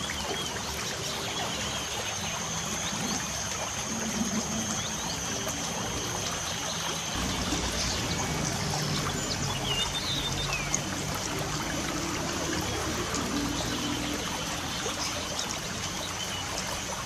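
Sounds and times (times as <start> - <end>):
light rain falling: 2.5 - 17.0
bird chirps: 7.2 - 10.9.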